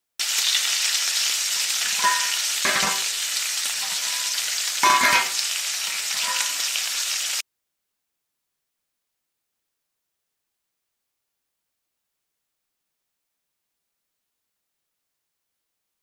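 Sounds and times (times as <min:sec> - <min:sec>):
sizzling hiss with crackles: 0:00.2 - 0:07.4.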